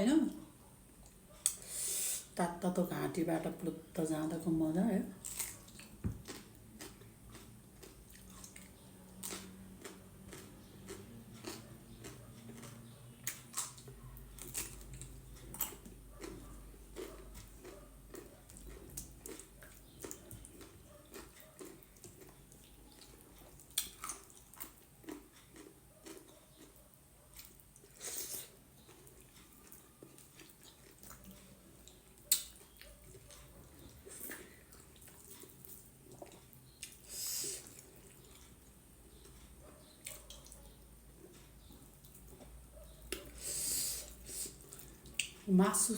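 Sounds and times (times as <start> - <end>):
wet chewing: 5.2 - 43.4, 44.0 - 45.5
lip smacks: 32.2 - 32.9.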